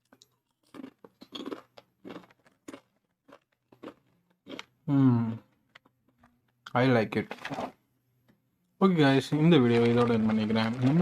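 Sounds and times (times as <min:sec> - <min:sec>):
chewing crunchy chips: 0:00.0 - 0:04.8, 0:09.7 - 0:11.0.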